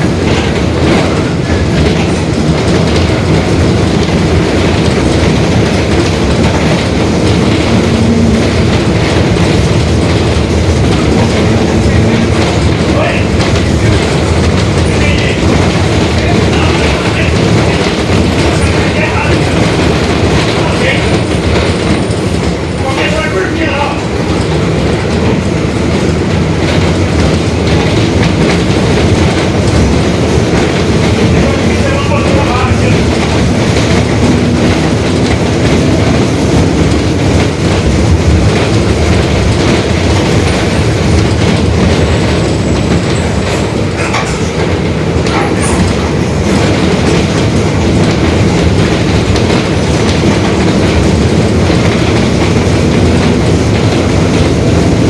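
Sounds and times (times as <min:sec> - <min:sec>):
bus engine and road rumble: 0:00.0 - 0:55.0
rattling: 0:00.0 - 0:55.0.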